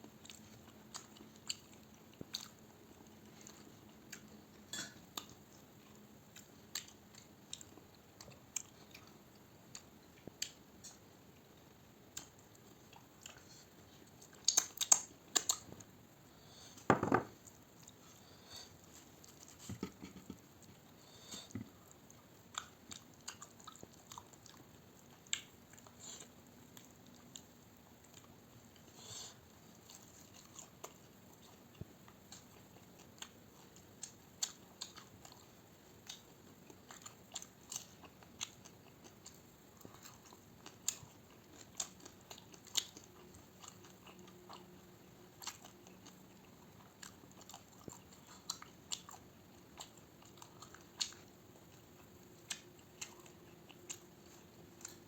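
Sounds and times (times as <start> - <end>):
person chewing and crunching: 0.0 - 15.8, 16.7 - 55.0.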